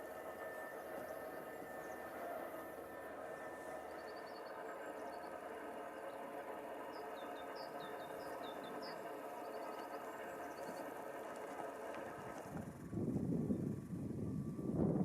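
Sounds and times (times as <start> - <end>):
small birds chirping: 0.0 - 12.6
steady mechanical hum: 0.0 - 15.0
wind buffeting microphone: 11.9 - 15.0.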